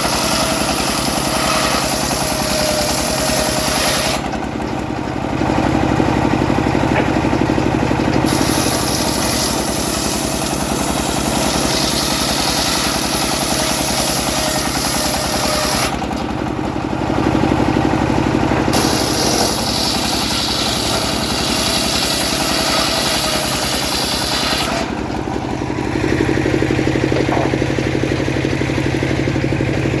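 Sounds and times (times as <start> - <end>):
saw blade cutting a log: 0.0 - 5.0, 6.6 - 16.4, 18.5 - 27.8
sawmill engine running: 0.0 - 30.0.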